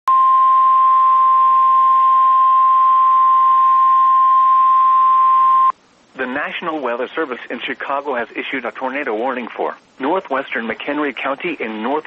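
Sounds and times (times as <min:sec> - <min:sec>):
loud steady high beep: 0:00.1 - 0:05.8.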